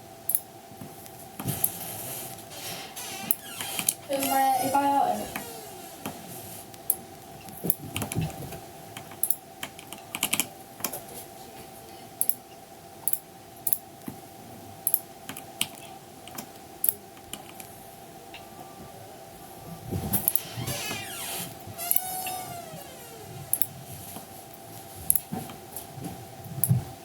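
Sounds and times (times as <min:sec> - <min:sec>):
steady hum: 0:00.0 - 0:08.9, 0:16.0 - 0:25.1.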